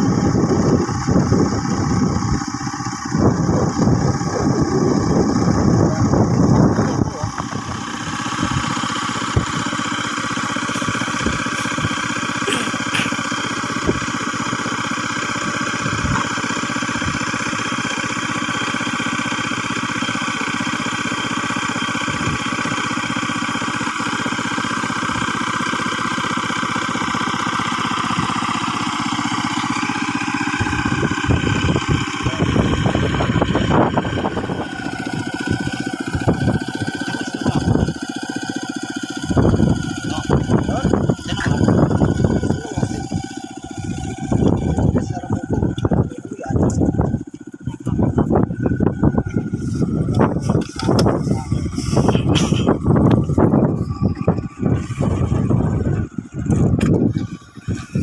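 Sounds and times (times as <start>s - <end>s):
small engine running: 0.0s - 58.0s
rough low rumble: 39.3s - 58.0s.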